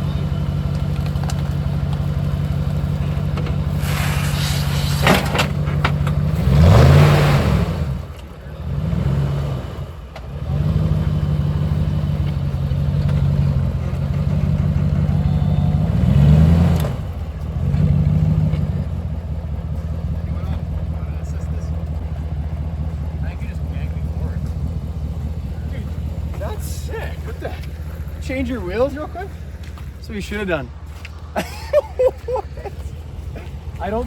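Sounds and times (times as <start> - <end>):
truck engine revving: 0.0 - 34.0
rough scraping: 2.5 - 6.7.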